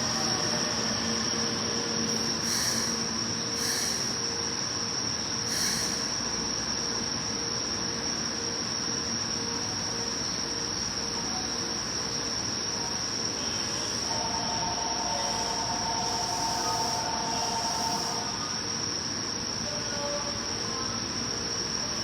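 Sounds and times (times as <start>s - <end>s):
low station rumble: 0.0s - 7.4s, 9.2s - 21.3s
insects chirring: 0.0s - 22.0s
steady mid-pitched tones: 14.0s - 18.5s.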